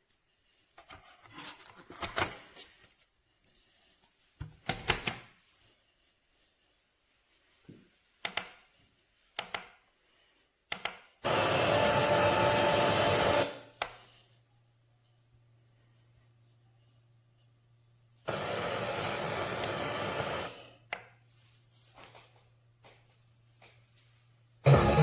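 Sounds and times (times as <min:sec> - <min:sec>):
loud hiss-like rush: 0:18.3 - 0:20.7.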